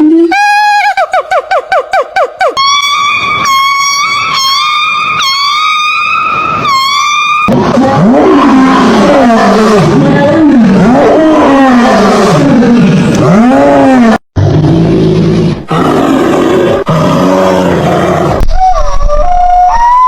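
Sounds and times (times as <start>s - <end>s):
whistle-like animal call: 1.9s - 7.5s, 18.4s - 20.0s.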